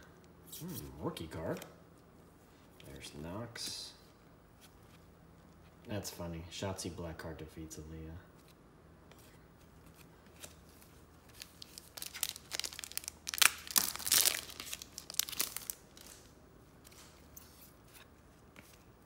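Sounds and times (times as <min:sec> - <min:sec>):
wrapper crinkling and tearing: 0:10.4 - 0:16.3.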